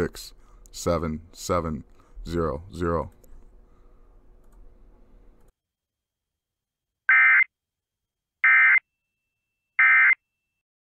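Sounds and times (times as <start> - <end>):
faint steady hum: 0.0 - 5.6.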